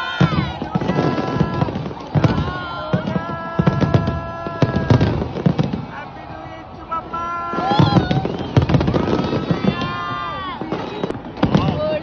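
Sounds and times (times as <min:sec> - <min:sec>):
fireworks bangs: 0:00.0 - 0:12.0.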